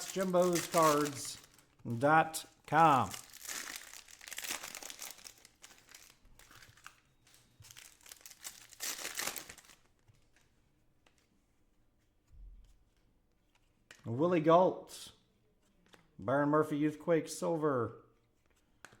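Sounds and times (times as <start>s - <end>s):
foil wrappers tearing and crinkling: 0.0s - 1.6s, 2.8s - 9.9s.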